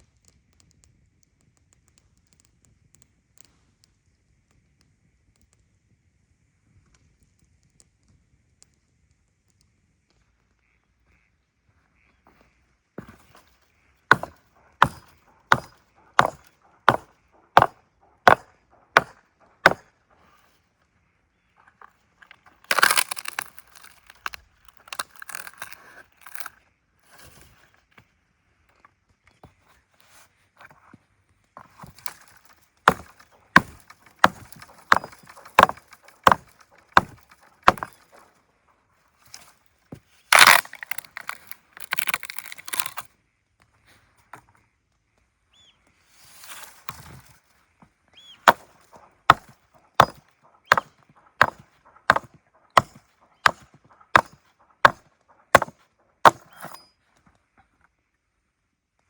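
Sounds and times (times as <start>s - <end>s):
wood breaking: 14.1s - 19.8s, 22.6s - 26.5s, 31.8s - 38.2s, 40.3s - 43.1s, 48.5s - 48.7s, 49.3s - 56.8s
blade chopping wood: 14.1s - 19.9s, 22.7s - 26.5s, 31.8s - 38.2s, 40.3s - 43.1s, 48.4s - 56.9s.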